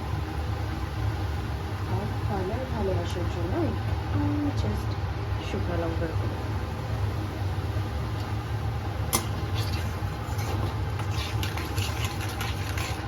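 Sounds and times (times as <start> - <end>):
spices sizzling in hot oil: 5.5 - 13.0.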